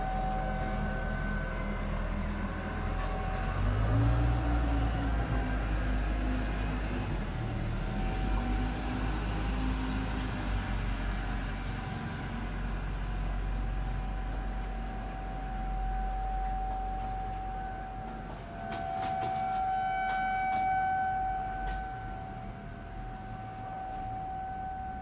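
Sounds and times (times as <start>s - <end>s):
warning siren steady tone: 0.0s - 25.0s.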